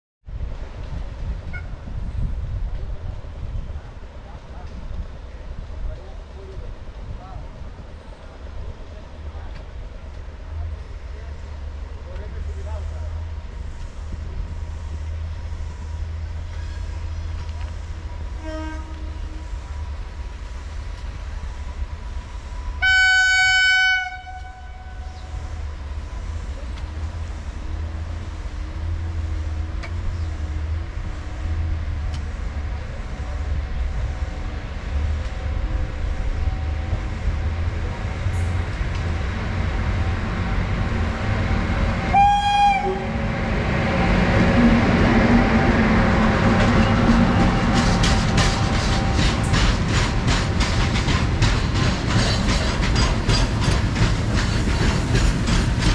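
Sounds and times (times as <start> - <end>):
locomotive low rumble: 0.3 - 55.9
train horn blast: 18.3 - 19.6, 22.8 - 25.4, 41.9 - 43.3.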